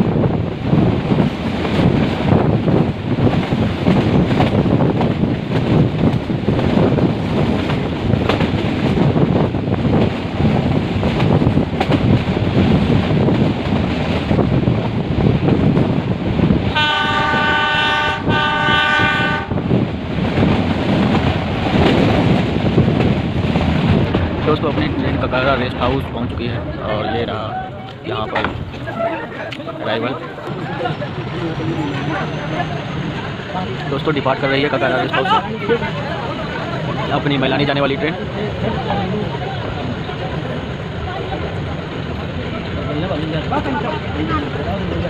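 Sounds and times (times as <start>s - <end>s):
train wheels rumbling on rails: 0.0s - 45.0s
locomotive horn blasts: 16.7s - 19.6s.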